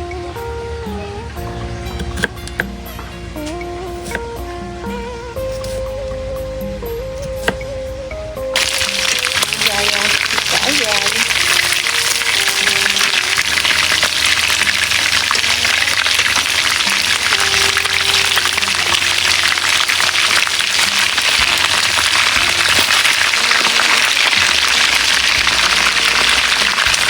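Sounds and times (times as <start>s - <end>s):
chicken deep-frying in oil: 8.6s - 27.0s.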